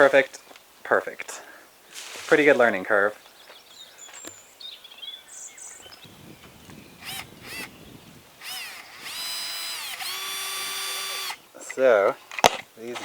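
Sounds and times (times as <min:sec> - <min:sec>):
faint bird chirps: 0:03.2 - 0:09.2
power drill whining: 0:06.0 - 0:11.5.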